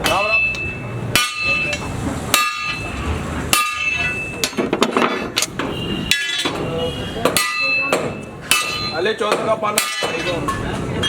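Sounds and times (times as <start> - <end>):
hammer blows on metal: 5.2 - 10.6.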